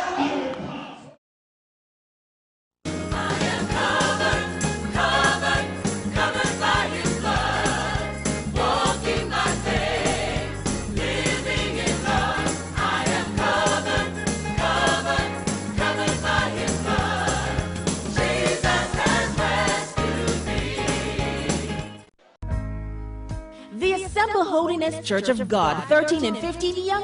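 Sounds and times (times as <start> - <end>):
band playing: 2.9 - 22.6
choir singing: 3.0 - 22.1.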